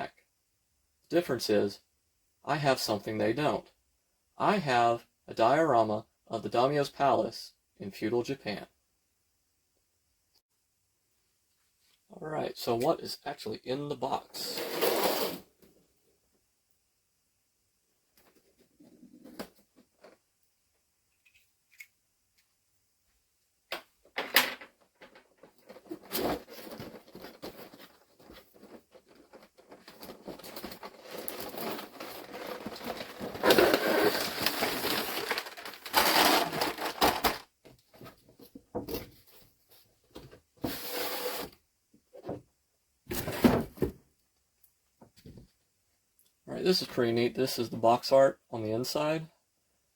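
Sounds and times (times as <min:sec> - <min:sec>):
cardboard scraping and rustling: 0:25.3 - 0:39.6, 0:40.6 - 0:41.6, 0:43.1 - 0:44.0.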